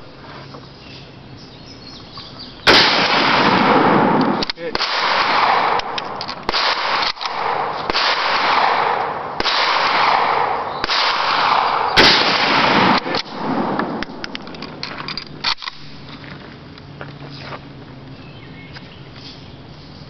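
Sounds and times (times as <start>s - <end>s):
rifle gunshots: 2.7s - 14.8s.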